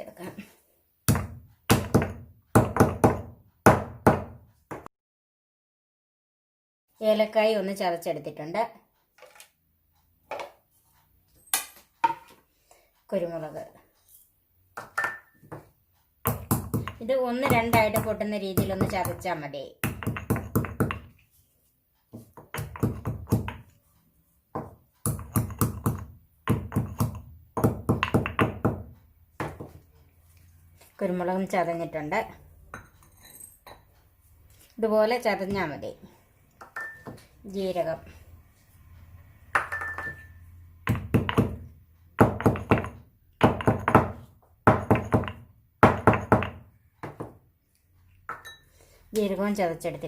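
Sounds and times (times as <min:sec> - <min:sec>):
pestle crushing seeds in mortar: 0:01.0 - 0:04.8, 0:14.8 - 0:21.2, 0:22.1 - 0:23.8, 0:24.5 - 0:29.9, 0:40.8 - 0:47.4
peppercorns being pounded: 0:16.3 - 0:21.2, 0:22.2 - 0:23.7, 0:24.6 - 0:29.8, 0:40.8 - 0:47.4.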